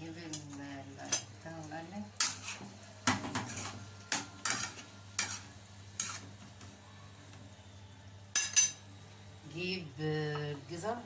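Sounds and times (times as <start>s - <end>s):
food sizzling in a pan: 0.5s - 6.6s
utensils and dishes clattering: 2.2s - 6.3s, 8.3s - 8.8s.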